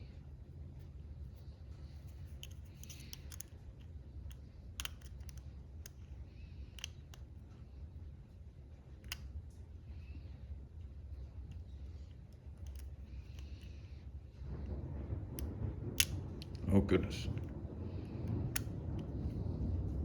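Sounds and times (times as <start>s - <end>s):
low steady hum: 0.0s - 20.0s
lock pick metallic clicks: 2.2s - 3.6s, 4.3s - 7.4s, 9.0s - 9.3s, 12.3s - 13.7s, 18.5s - 19.1s.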